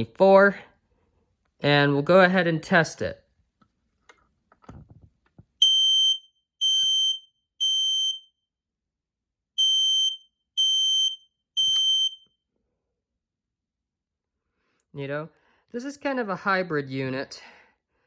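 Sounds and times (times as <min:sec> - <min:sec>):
smoke alarm beeps: 0:05.6 - 0:08.5, 0:09.6 - 0:12.4.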